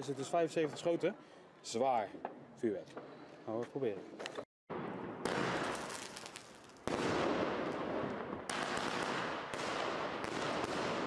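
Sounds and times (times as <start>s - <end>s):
fireworks rapid shots and crackling: 4.7s - 11.0s.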